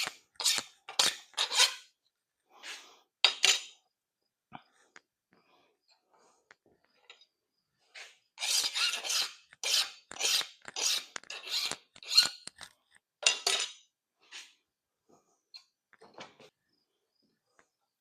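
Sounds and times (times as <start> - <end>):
file rasping on steel: 0.0 - 1.9, 8.0 - 12.6.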